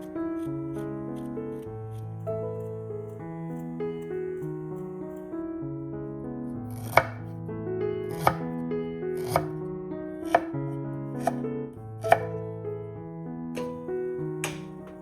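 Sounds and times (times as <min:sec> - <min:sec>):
background piano music: 0:00.0 - 0:15.0
knife chopping on cutting board: 0:06.8 - 0:07.2, 0:08.1 - 0:08.4, 0:09.2 - 0:09.5, 0:10.3 - 0:10.5, 0:12.0 - 0:12.4, 0:14.4 - 0:15.0.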